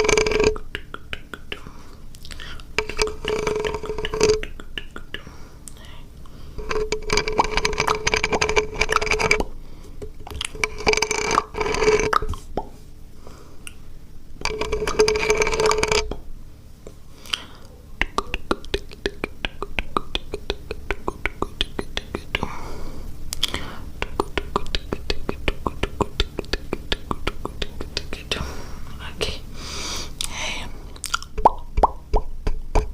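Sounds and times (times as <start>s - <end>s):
held voiced mouth sound: 0.0s - 5.9s, 17.3s - 22.6s, 23.4s - 28.4s
wet mouth clicks: 0.0s - 5.9s, 17.2s - 22.5s, 23.3s - 28.3s, 31.0s - 32.9s.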